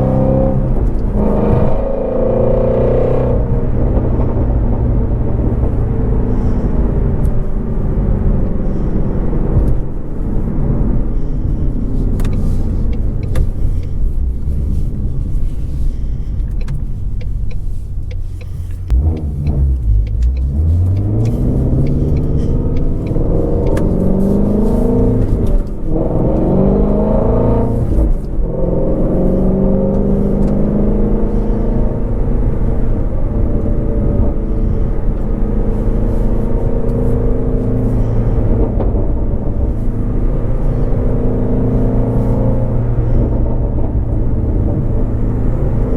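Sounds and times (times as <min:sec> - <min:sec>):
car engine accelerating: 0:00.0 - 0:45.9
quick gear shifts: 0:10.6 - 0:28.4, 0:29.1 - 0:45.9.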